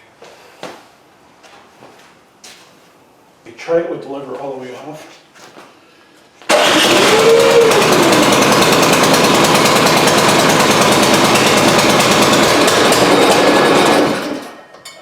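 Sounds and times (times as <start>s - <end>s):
snow blower engine running: 6.5s - 14.6s.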